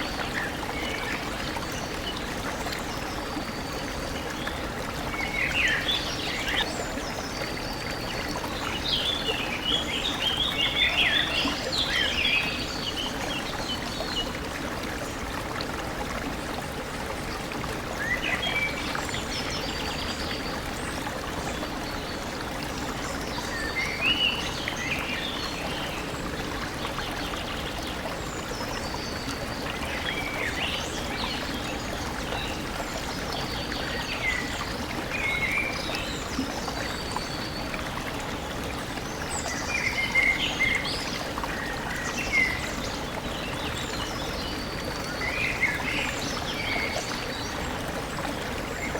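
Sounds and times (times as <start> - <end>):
stream running: 0.0 - 48.9.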